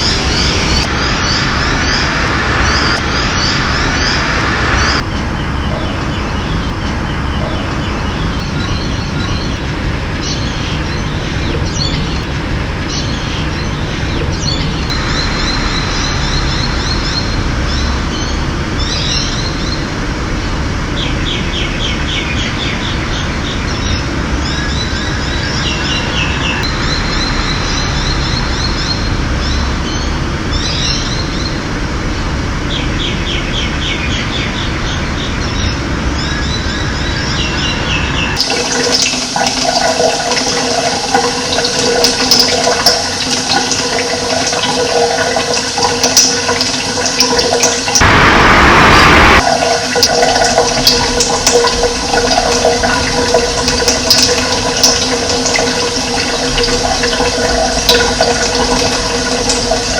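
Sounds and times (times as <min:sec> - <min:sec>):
loud gush of water: 0:00.0 - 0:31.8, 0:35.5 - 0:59.9
birds chirping: 0:00.0 - 0:59.9
running water: 0:00.0 - 0:59.9.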